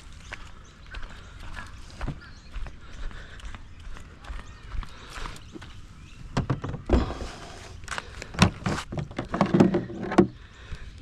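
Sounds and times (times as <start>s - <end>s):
knocks and thumps: 6.3s - 7.2s.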